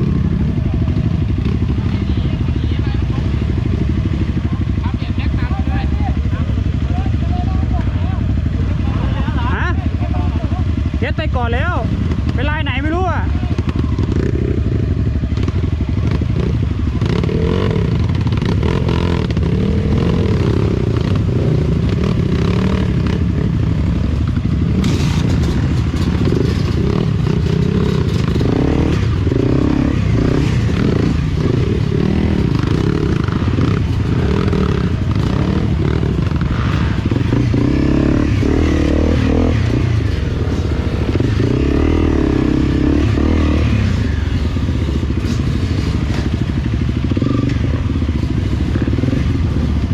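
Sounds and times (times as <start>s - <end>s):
dirt bike engine revving: 11.6s - 49.9s
bike clattering over rough ground: 24.8s - 29.2s.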